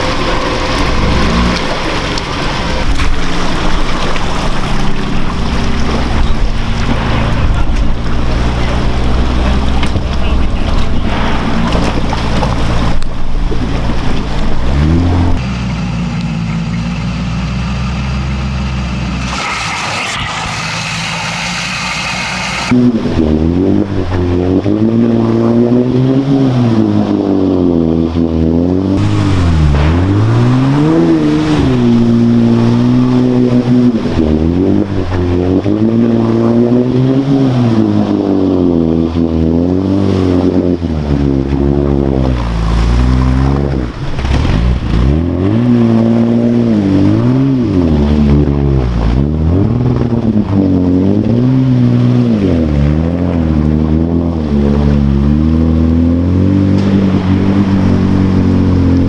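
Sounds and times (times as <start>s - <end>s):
truck engine revving: 0.0s - 59.0s.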